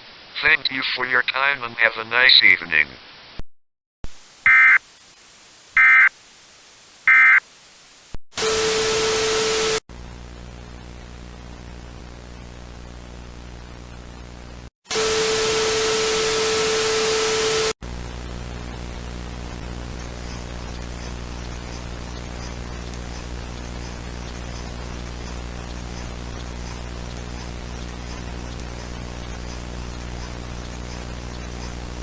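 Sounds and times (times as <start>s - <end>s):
loud static with steady tone: 0.0s - 3.4s, 4.0s - 32.0s
shrill digital data bursts: 4.4s - 4.8s, 5.8s - 6.1s, 7.1s - 7.4s.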